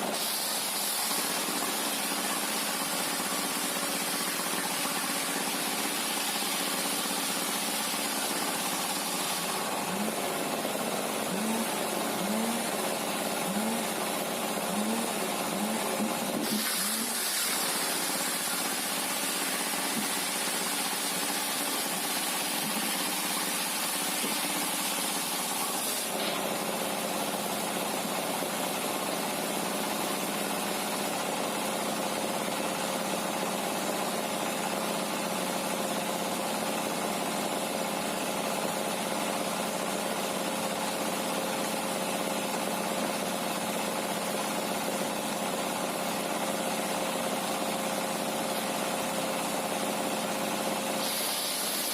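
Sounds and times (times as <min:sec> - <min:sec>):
sawmill machinery humming: 0:00.0 - 0:30.8
high hiss: 0:51.0 - 0:51.9.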